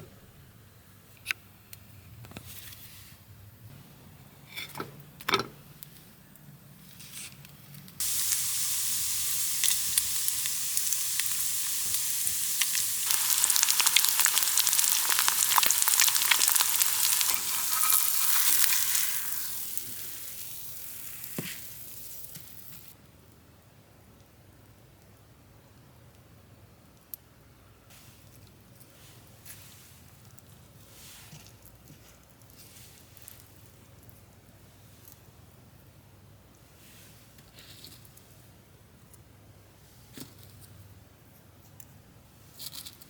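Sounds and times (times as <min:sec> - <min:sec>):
food sizzling in frying pan: 0:08.0 - 0:22.9.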